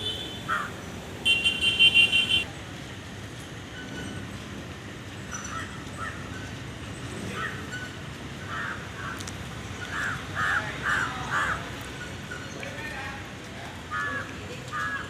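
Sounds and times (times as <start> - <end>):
crows cawing: 0.5 - 0.8, 8.4 - 9.2, 9.9 - 11.8, 13.9 - 15.0.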